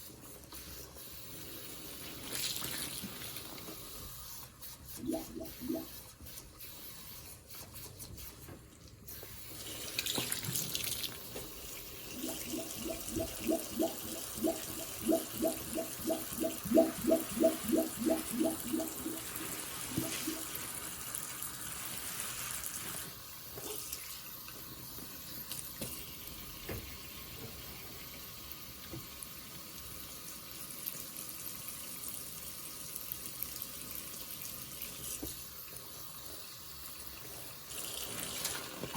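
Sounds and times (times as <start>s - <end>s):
running tap water: 0.0s - 6.7s, 9.1s - 38.9s
sponge squelching: 4.7s - 6.6s, 12.1s - 21.0s.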